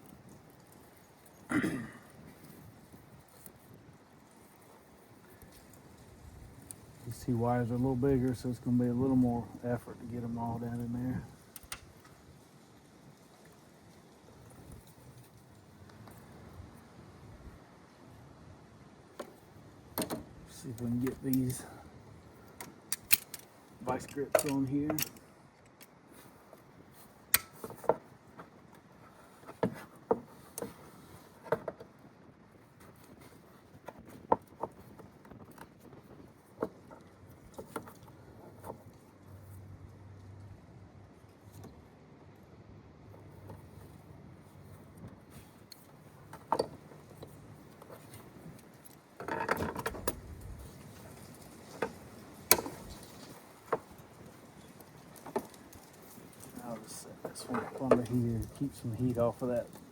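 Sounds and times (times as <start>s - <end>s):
locking pliers clicking on metal: 22.9s - 25.9s
tools and metal parts clinking: 22.9s - 25.9s.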